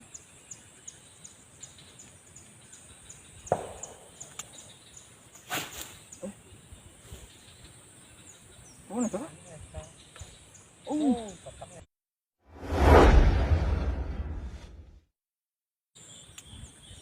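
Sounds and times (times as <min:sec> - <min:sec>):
insects chirping: 0:00.0 - 0:11.8
short rushing burst: 0:12.6 - 0:14.8.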